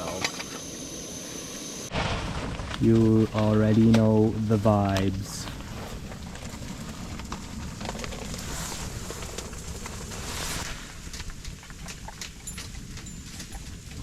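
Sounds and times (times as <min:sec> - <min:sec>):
camp stove hissing: 0:03.1 - 0:13.4.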